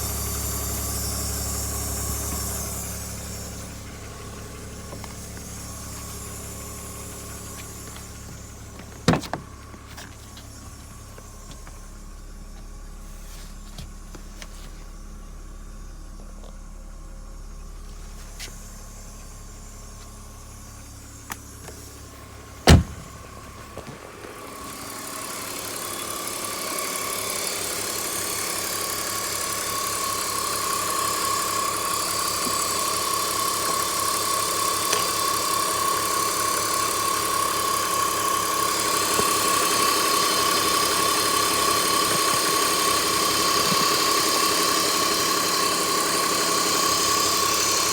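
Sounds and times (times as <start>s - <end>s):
metallic whirring under car: 21.2s - 24.9s.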